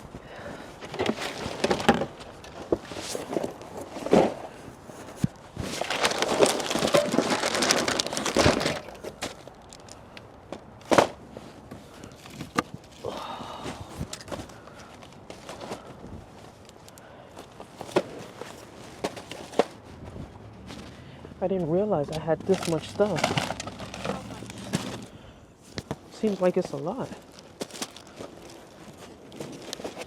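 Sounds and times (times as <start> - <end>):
plastic packaging crinkling: 5.6 - 10.4, 22.4 - 25.1, 26.1 - 30.0.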